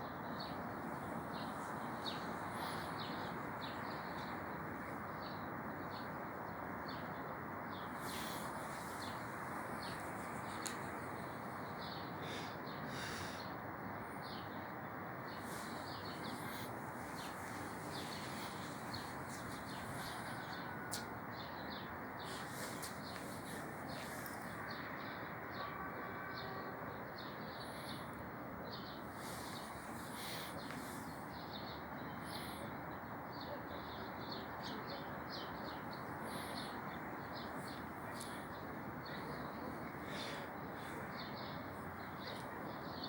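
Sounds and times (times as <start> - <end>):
steady background hiss: 0.0 - 24.7
birds chirping: 0.0 - 25.2, 27.5 - 32.7, 33.3 - 43.0.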